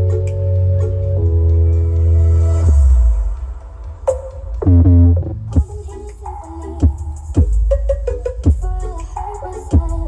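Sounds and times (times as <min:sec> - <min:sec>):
loud electronic dance music: 0:03.6 - 0:10.0.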